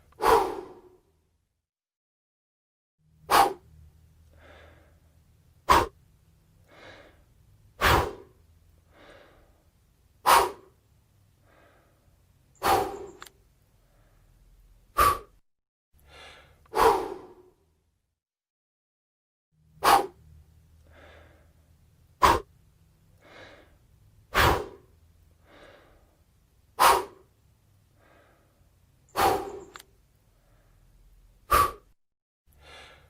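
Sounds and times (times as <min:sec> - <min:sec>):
person blowing sharp puffs: 0:00.0 - 0:00.9, 0:03.2 - 0:03.7, 0:05.6 - 0:06.0, 0:07.8 - 0:09.4, 0:10.2 - 0:10.8, 0:12.6 - 0:13.4, 0:14.9 - 0:15.4, 0:16.0 - 0:17.4, 0:19.7 - 0:20.3, 0:22.2 - 0:22.5, 0:24.3 - 0:25.9, 0:26.8 - 0:27.3, 0:29.1 - 0:29.9, 0:31.4 - 0:32.0
soft breaths: 0:03.2 - 0:15.4, 0:19.7 - 0:33.0.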